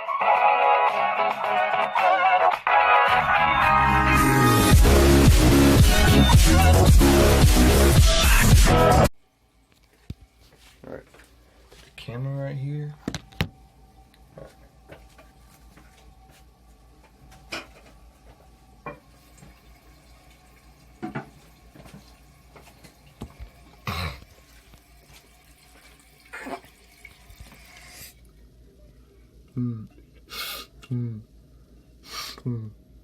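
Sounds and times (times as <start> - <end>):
water in toilet tank: 18.8 - 28.3.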